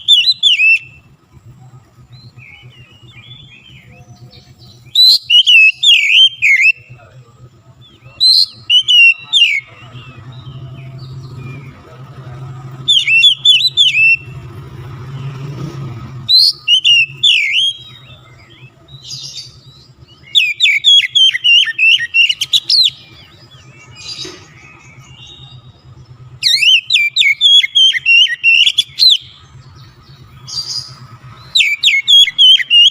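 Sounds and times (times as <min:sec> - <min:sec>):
bird singing whistled phrases: 0:00.0 - 0:01.1, 0:02.1 - 0:07.1, 0:07.8 - 0:11.9, 0:12.8 - 0:14.5, 0:16.2 - 0:32.9.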